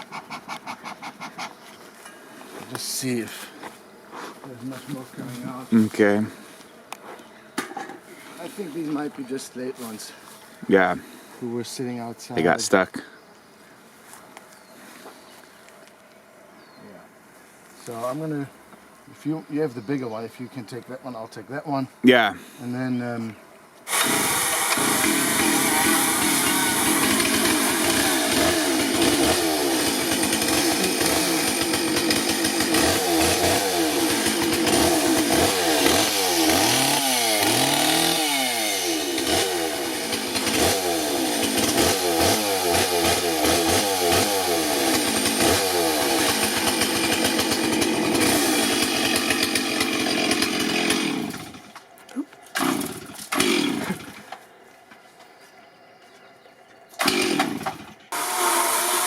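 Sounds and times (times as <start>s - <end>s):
chainsaw revving: 23.9s - 51.8s, 52.5s - 54.3s, 57.0s - 59.0s
chainsaw cutting wood: 23.9s - 51.9s, 52.5s - 54.4s, 57.0s - 59.0s.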